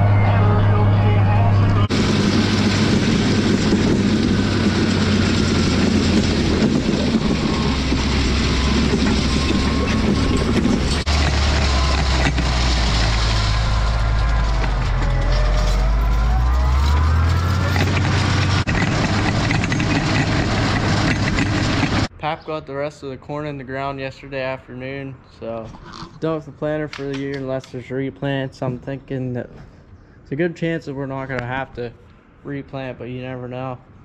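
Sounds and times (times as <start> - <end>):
tractor engine running: 0.0 - 22.1.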